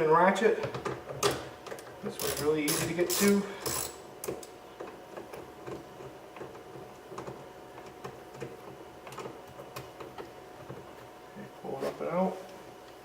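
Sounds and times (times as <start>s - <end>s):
hand ratchet clicking: 1.2s - 4.5s.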